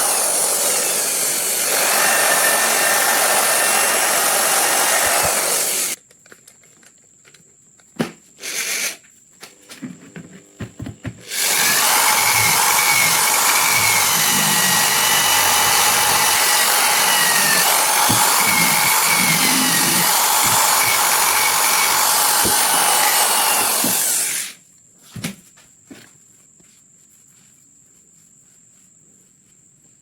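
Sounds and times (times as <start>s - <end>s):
power tool hissing: 0.0s - 6.0s, 11.2s - 24.6s.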